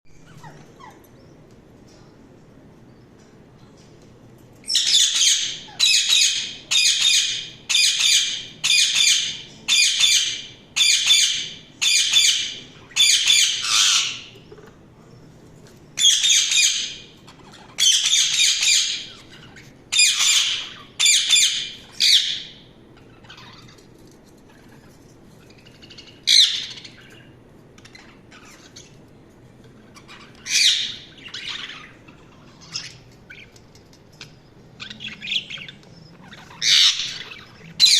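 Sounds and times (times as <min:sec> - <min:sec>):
budgerigar harsh calls: 0:04.8 - 0:14.3, 0:17.7 - 0:22.6, 0:36.3 - 0:37.9.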